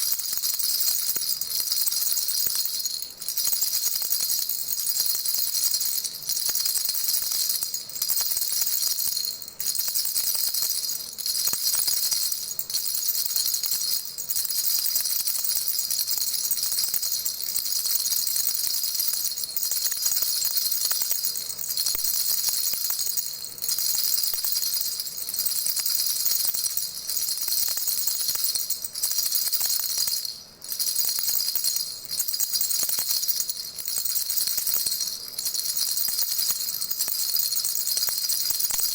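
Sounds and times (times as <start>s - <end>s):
baby rattle shaking: 0.0s - 38.9s.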